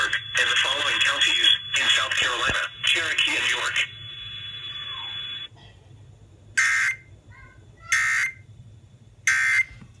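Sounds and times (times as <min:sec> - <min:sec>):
radio hiss: 0:00.0 - 0:05.5.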